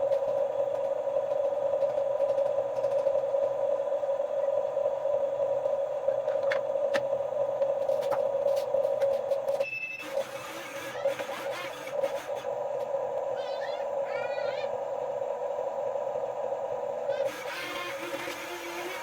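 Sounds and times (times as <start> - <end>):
small electric motor humming: 10.0 - 14.7, 17.0 - 19.0.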